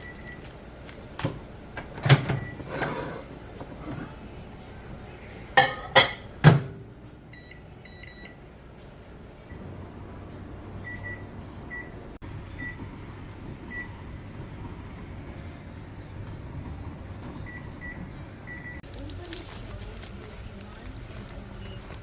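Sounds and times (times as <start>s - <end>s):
microwave oven humming: 0.0s - 18.9s.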